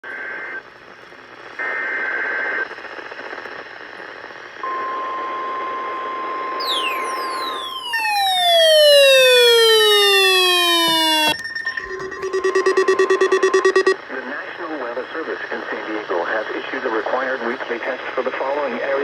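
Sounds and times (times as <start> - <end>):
steady alert tone: 6.6 - 14.0
steady higher tone: 6.6 - 14.0
whistle gliding down in pitch: 6.6 - 14.0.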